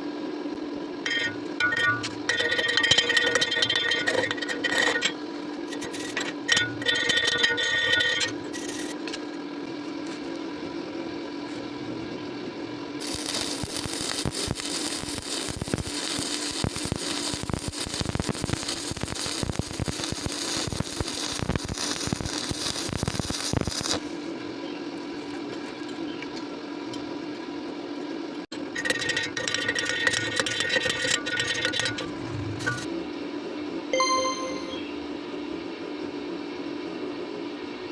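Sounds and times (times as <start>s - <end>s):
welding arc crackling: 13.0s - 24.2s
short loud tonal sound: 34.0s - 35.1s.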